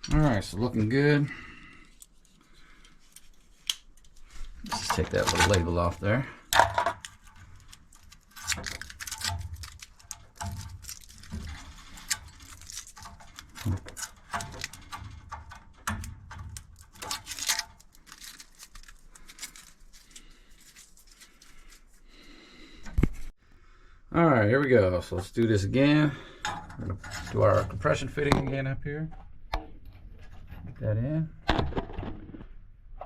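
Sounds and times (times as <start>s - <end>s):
hands handling plumbing fittings: 1.8s - 22.1s, 26.2s - 28.4s.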